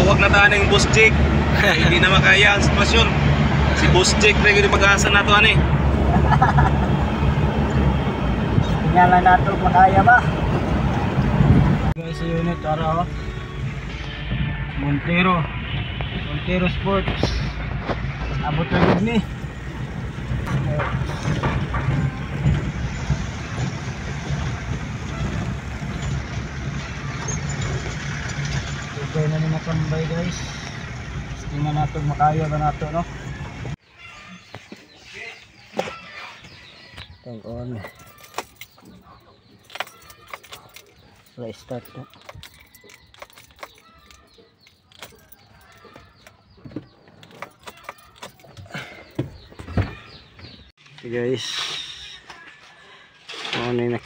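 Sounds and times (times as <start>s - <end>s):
vehicle engine running: 0.0s - 33.8s
light metallic clicks and jangles: 37.8s - 46.4s, 47.2s - 48.7s.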